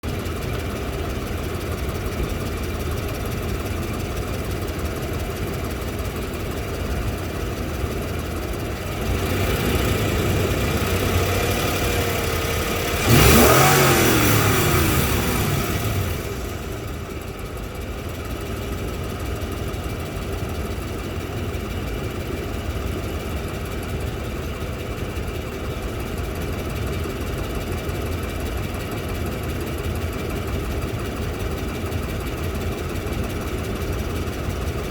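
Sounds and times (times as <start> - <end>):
car engine idling and revving: 0.0 - 34.9
engine knock: 0.0 - 34.9.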